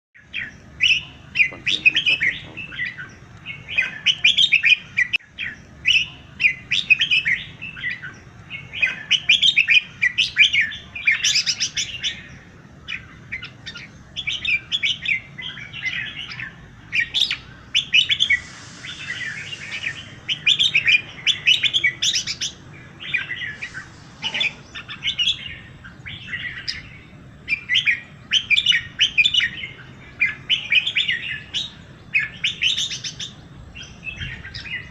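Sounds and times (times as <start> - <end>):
birds chirping in chorus: 0.2 - 34.9
brief high hiss: 18.0 - 20.6.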